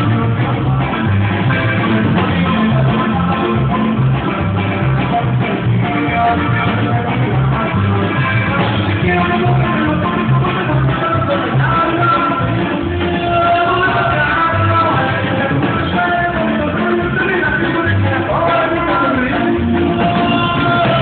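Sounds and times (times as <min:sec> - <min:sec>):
band playing with bass line: 0:00.0 - 0:21.0.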